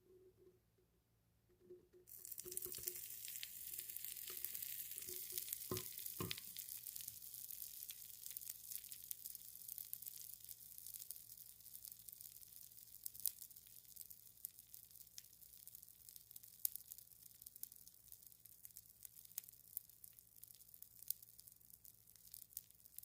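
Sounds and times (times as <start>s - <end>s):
popping candy crackling: 2.1s - 23.0s.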